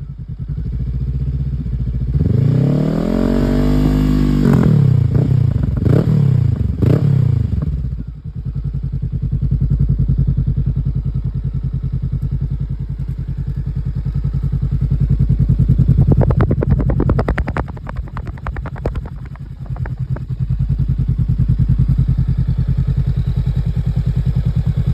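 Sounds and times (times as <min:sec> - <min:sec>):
motorcycle engine idling: 0:00.0 - 0:02.2, 0:05.0 - 0:24.9
exhaust crackling and clatter: 0:12.6 - 0:24.9
throttle blips: 0:15.8 - 0:20.3.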